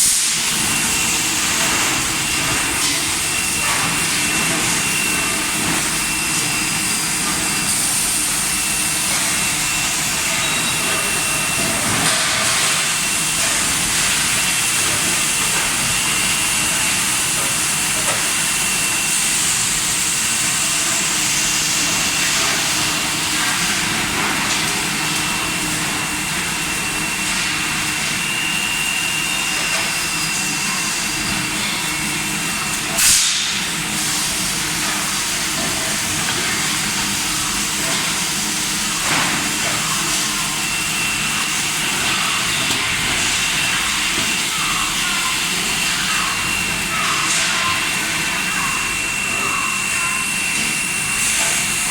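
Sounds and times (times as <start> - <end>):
loud burst of hiss: 0.0 - 11.5, 33.0 - 39.4
factory machinery hiss and hum: 0.0 - 51.9.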